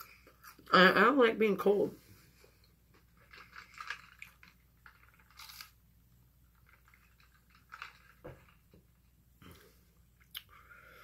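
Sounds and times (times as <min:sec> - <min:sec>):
person chewing food: 0:02.6 - 0:05.7.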